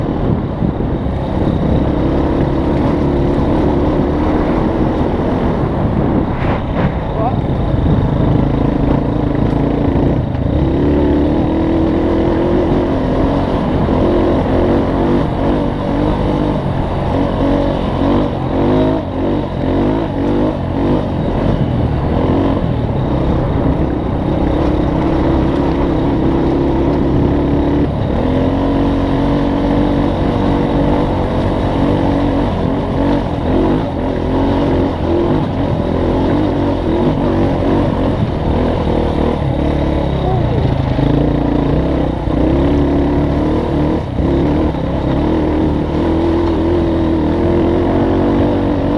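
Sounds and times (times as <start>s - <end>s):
off-road vehicle engine revving: 0.0s - 48.9s.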